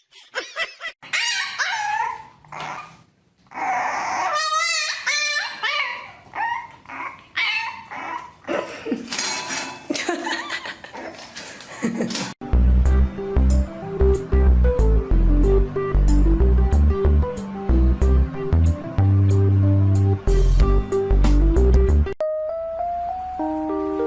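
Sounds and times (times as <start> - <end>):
dog yipping and whimpering: 1.0 - 8.5.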